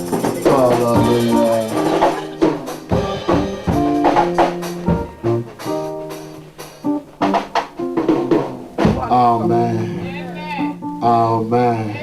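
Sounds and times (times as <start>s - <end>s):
drum hits: 0.0s - 9.5s
instrumental music with held chords: 0.0s - 12.0s.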